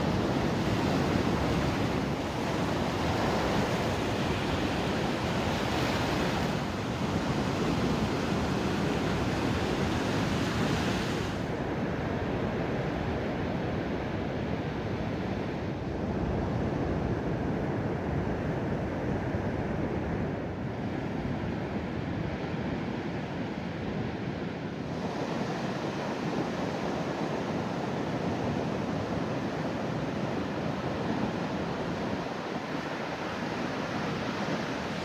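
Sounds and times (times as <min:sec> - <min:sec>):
wind on microphone: 0:00.0 - 0:11.4
ocean surf on a beach: 0:00.0 - 0:35.0.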